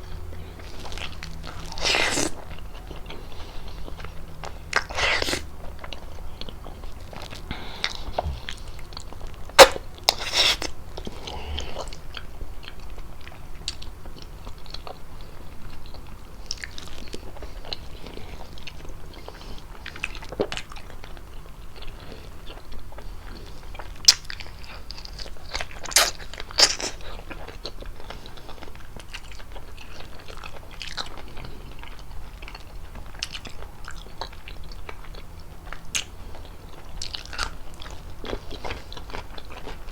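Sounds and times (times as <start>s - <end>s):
low steady hum: 0.0s - 23.8s
wet chewing and mouth smacks: 0.1s - 39.9s.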